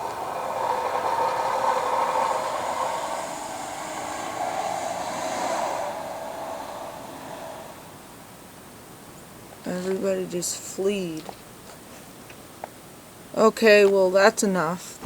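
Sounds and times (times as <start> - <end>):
construction machinery drone: 0.0 - 9.0.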